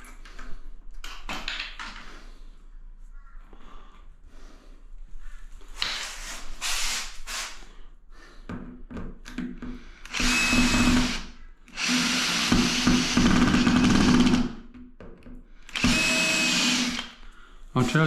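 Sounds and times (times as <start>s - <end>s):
power drill running: 10.0s - 14.5s, 15.7s - 17.2s.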